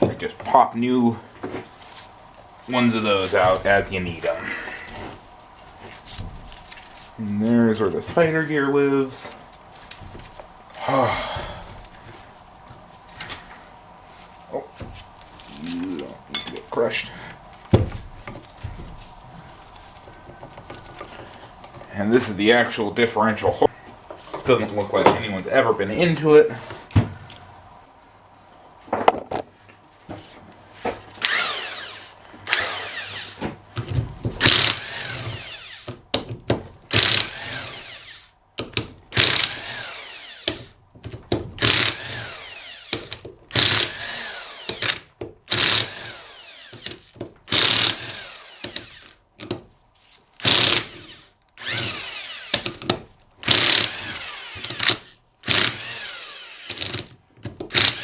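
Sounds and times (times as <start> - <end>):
power tool bursts: 31.2 - 33.5, 34.4 - 35.9, 36.9 - 38.3, 39.1 - 40.7, 41.6 - 49.2, 50.4 - 52.8, 53.4 - 57.1, 57.7 - 58.0.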